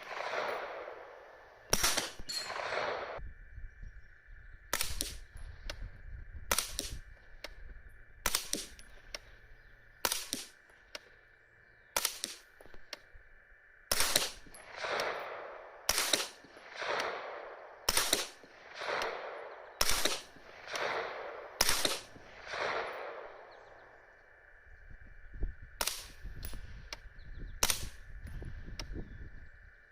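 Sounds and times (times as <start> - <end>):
suppressed rifle shots: 0.0 - 3.2, 4.7 - 5.8, 6.5 - 7.6, 8.2 - 9.3, 10.0 - 11.0, 12.0 - 13.0, 13.9 - 24.1, 25.8 - 26.6, 27.6 - 28.1.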